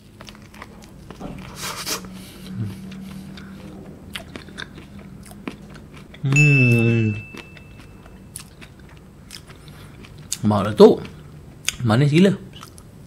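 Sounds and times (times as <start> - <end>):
person chewing food: 0.0 - 11.8, 12.5 - 13.0
person humming loudly: 6.3 - 7.2.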